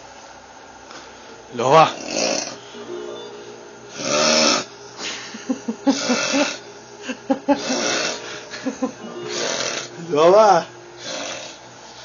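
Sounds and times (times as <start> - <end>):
man snoring: 1.9 - 2.6, 3.9 - 5.2, 5.8 - 6.7, 7.5 - 8.5, 9.2 - 11.6.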